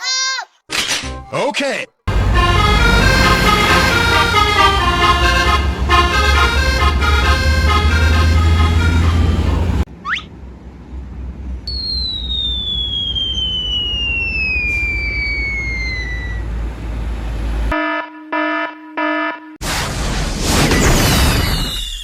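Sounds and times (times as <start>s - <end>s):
buzzing horn beeps: 2.1s - 9.6s
falling whistle: 10.0s - 10.3s, 11.7s - 16.5s, 20.8s - 22.0s
low rumble: 11.0s - 17.7s.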